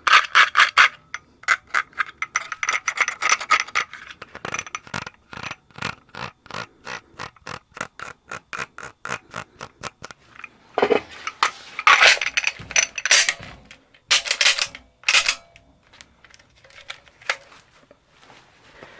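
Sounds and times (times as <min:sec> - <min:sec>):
pistol slide rattling: 0:00.0 - 0:05.6, 0:10.4 - 0:15.6
pistol metal clicks: 0:14.1 - 0:15.6.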